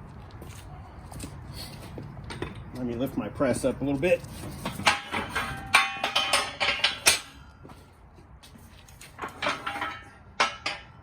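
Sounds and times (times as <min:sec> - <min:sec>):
steel tools clanking: 0:04.6 - 0:07.4, 0:09.2 - 0:11.0.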